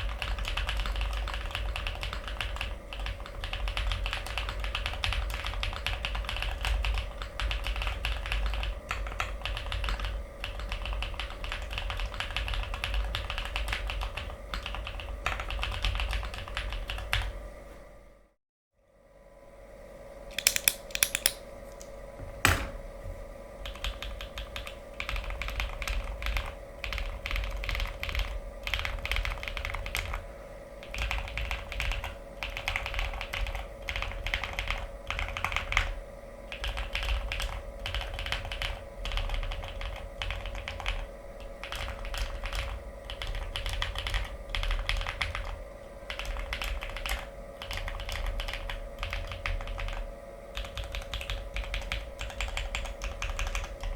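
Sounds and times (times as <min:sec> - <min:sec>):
mechanical keyboard keys pressed: 0:20.3 - 0:21.4, 0:41.6 - 0:50.0, 0:50.6 - 0:53.9.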